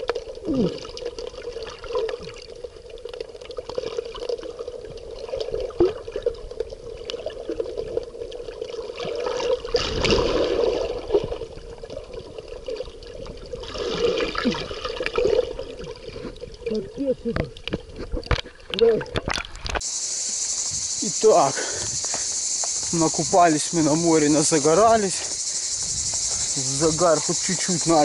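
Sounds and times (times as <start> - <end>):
sea water splashing at shore: 7.0 - 16.6.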